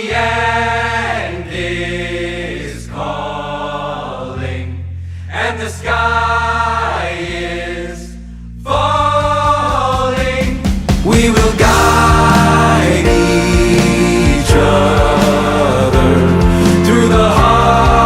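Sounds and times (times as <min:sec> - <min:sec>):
steady chords and bass: 0:00.0 - 0:18.0
wordless choral vocals: 0:00.0 - 0:18.0
percussion: 0:09.1 - 0:18.0.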